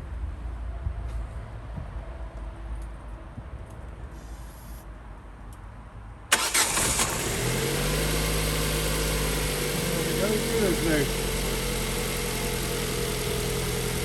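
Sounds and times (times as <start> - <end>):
car engine starting and idling: 6.3 - 14.0.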